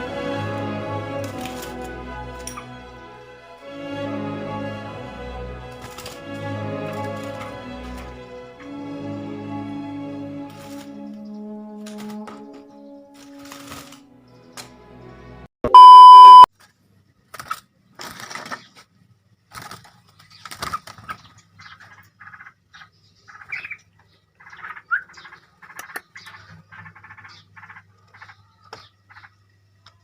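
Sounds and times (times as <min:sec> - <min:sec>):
electronic beep: 0:15.6 - 0:16.5
rising bird chirps: 0:15.7 - 0:16.4.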